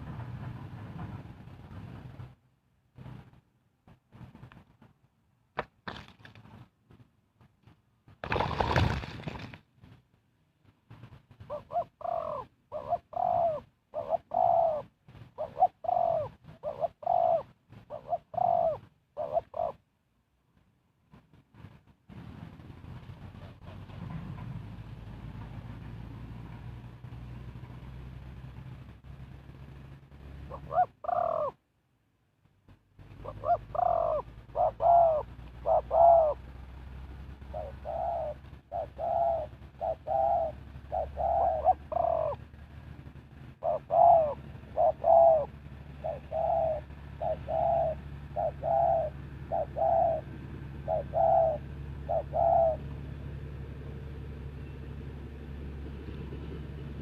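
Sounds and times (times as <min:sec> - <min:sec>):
dove cooing: 0:11.4 - 0:19.9, 0:30.4 - 0:31.6, 0:33.1 - 0:36.6, 0:37.4 - 0:42.5, 0:43.6 - 0:53.0.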